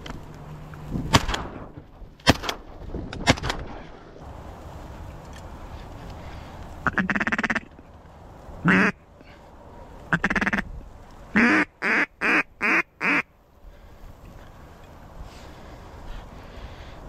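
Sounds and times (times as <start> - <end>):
duck call chatter: 6.8 - 7.7, 8.6 - 9.0, 10.1 - 10.6, 11.4 - 13.3
duck call quacks: 6.8 - 7.7, 8.6 - 9.0, 10.1 - 10.6, 11.4 - 13.3.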